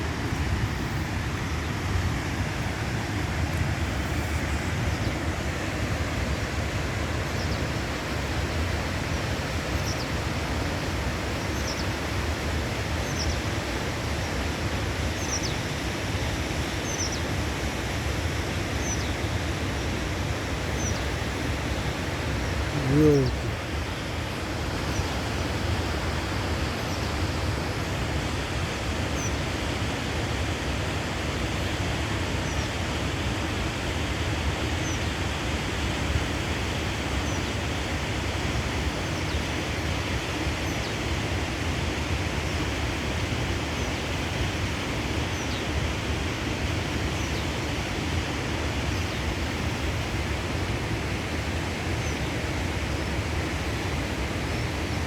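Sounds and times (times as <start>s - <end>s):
faint high bird chirps: 22.7s - 23.5s.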